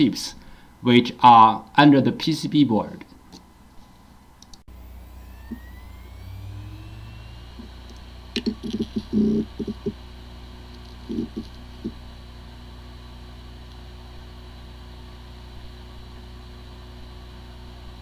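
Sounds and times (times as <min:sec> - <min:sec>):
hard drive humming: 0:03.1 - 0:18.0
hard drive clicks: 0:04.4 - 0:12.2
hard drive spin-up whine: 0:04.6 - 0:18.0.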